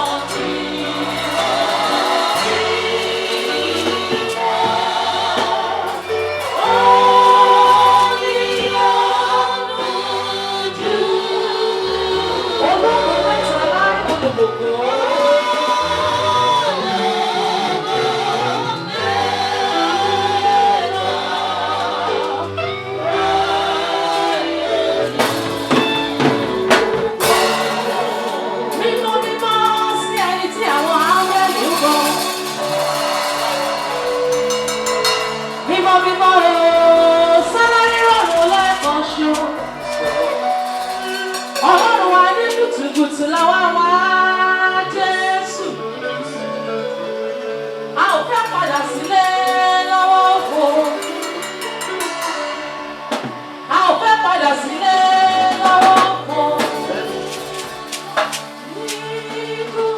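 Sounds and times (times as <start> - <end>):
sharp hits: 0.0 - 10.0, 25.1 - 43.7, 48.0 - 54.1
band accompaniment: 0.0 - 11.8, 18.3 - 59.9
voices singing worship song: 0.0 - 59.9.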